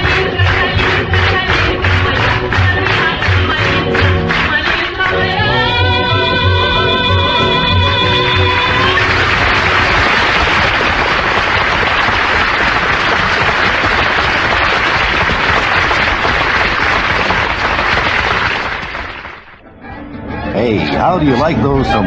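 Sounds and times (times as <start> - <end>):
large crowd applauding: 0.0 - 5.2, 7.8 - 19.6.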